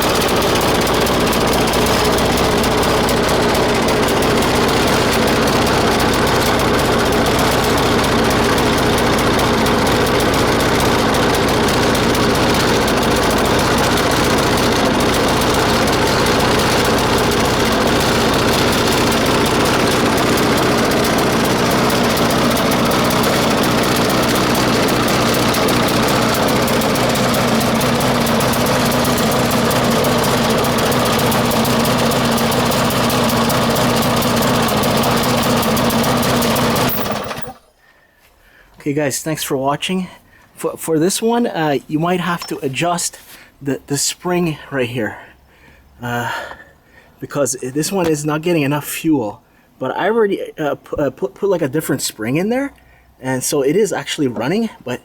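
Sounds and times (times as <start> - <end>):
lawn mower engine running: 0.0 - 37.8, 41.6 - 43.9, 47.2 - 48.6.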